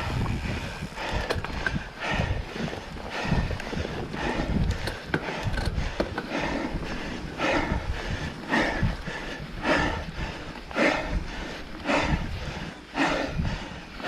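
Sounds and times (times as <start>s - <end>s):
person panting heavily: 0.0s - 14.0s
steady low rumble: 0.0s - 14.0s.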